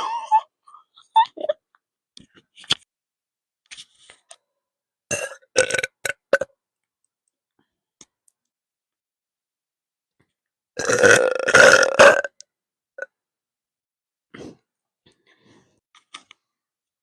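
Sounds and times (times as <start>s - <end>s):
woman burping: 10.8s - 12.4s.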